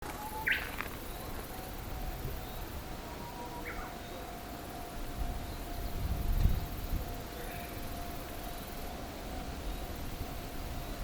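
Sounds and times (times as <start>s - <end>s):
faint steady tone: 0.0s - 11.0s
bird chirps: 0.2s - 1.6s, 3.6s - 4.3s.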